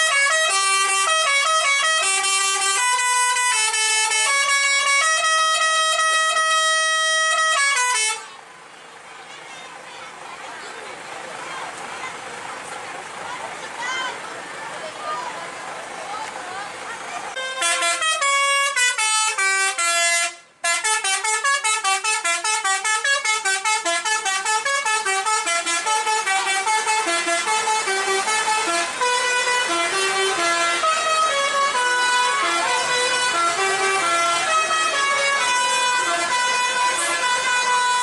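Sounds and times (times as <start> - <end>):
multi-tone bus horns playing melody: 0.0 - 8.7, 17.3 - 38.0
held horn note: 17.4 - 38.0.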